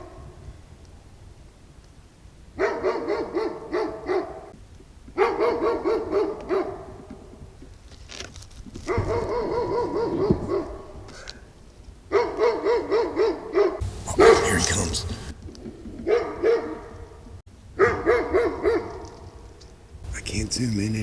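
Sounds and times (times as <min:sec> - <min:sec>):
dog barking: 0:02.6 - 0:04.5, 0:05.2 - 0:07.1, 0:08.9 - 0:11.0, 0:12.1 - 0:15.3, 0:16.0 - 0:16.9, 0:17.8 - 0:19.1.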